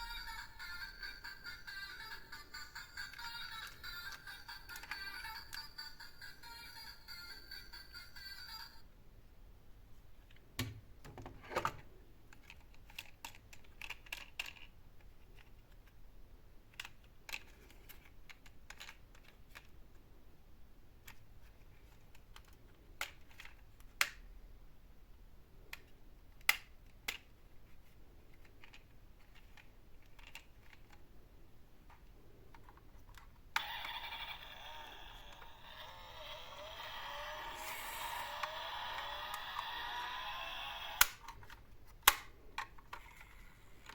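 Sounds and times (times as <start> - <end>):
toy electronic sound effect: 0.0 - 8.8, 33.6 - 41.2.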